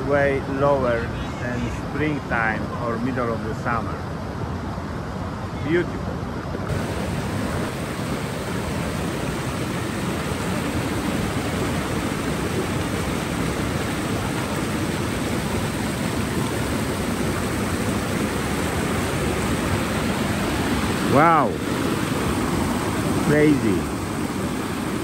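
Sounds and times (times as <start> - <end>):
creek rushing over rocks: 6.7 - 25.0.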